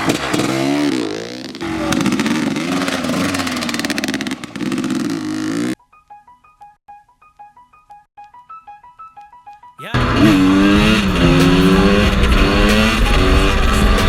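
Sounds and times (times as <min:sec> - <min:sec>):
dirt bike engine revving: 0:00.0 - 0:05.8, 0:10.0 - 0:14.0
soft piano music: 0:05.8 - 0:09.8.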